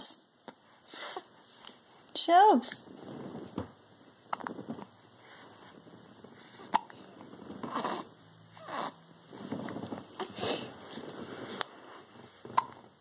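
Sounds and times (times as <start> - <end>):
baby breathing softly: 5.1 - 9.0
baby hiccuping: 6.7 - 7.0, 12.5 - 12.8.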